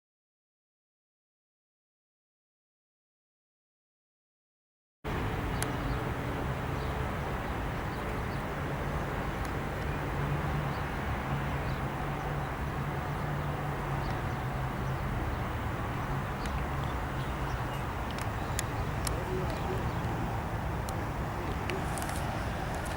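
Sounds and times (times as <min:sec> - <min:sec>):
low even drone: 0:05.1 - 0:22.9
faint high ticks: 0:17.7 - 0:20.2.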